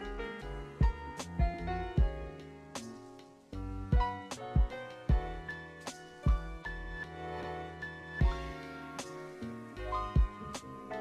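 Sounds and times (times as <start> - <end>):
steady drum beat: 0.8 - 3.0, 3.9 - 5.5, 8.2 - 9.1, 10.2 - 10.4.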